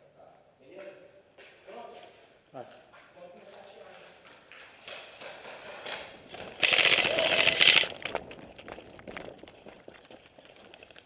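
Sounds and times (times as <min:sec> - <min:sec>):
airsoft gun full-auto burst: 0:06.6 - 0:08.1.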